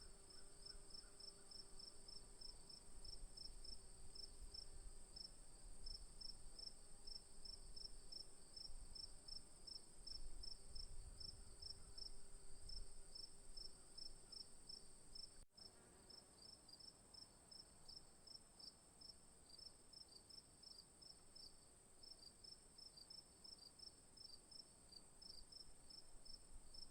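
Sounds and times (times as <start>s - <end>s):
crickets chirping: 0.0s - 15.4s.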